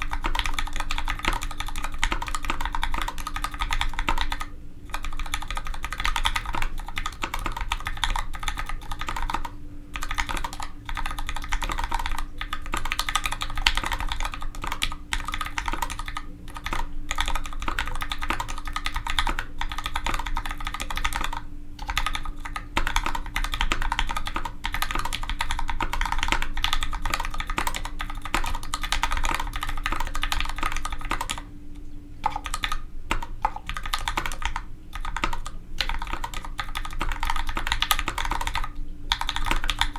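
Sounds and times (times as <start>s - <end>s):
mechanical keyboard typing: 0.0s - 31.5s, 32.2s - 39.9s.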